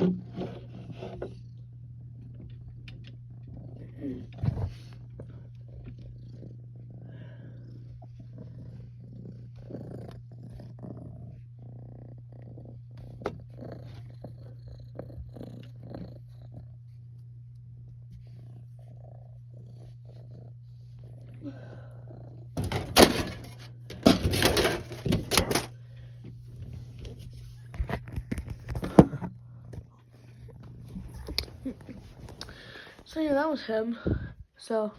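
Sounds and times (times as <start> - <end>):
cat purring: 0.0 - 22.6, 25.5 - 34.6
loud rustling and clattering: 22.6 - 25.8.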